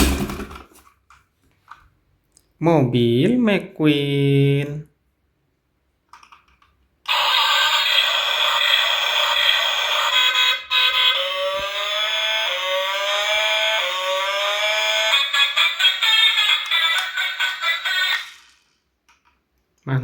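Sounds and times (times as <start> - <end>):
tinny harsh toy noise: 7.1 - 18.7
rising siren-like whoops: 10.0 - 15.4.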